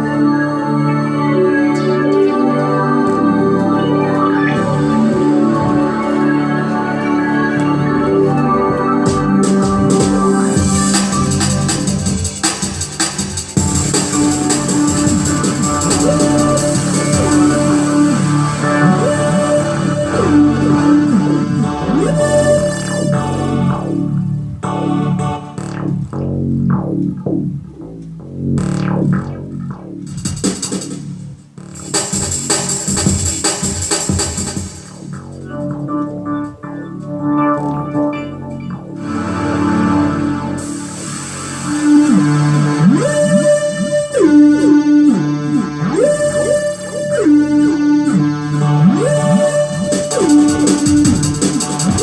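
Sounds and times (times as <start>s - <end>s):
bass-heavy keyboard notes: 0.0s - 52.0s
hissing percussion pattern: 9.0s - 21.5s, 28.6s - 35.8s, 48.8s - 52.0s.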